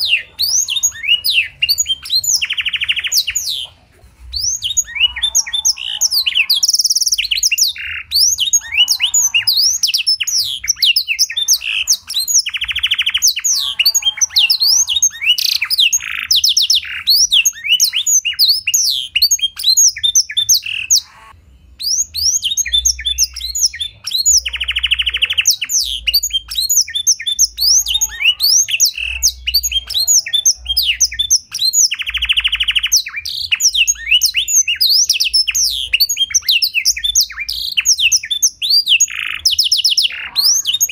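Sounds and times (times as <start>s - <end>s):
canary singing: 0.0s - 40.9s.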